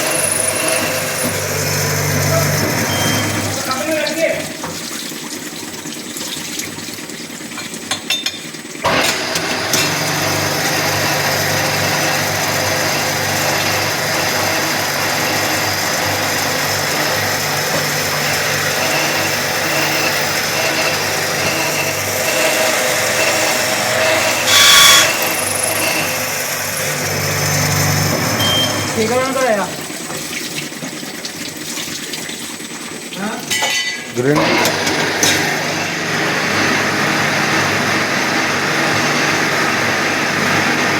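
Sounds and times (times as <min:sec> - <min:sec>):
drilling and tapping machine running: 0:00.0 - 0:03.6, 0:08.8 - 0:30.2, 0:34.4 - 0:40.9.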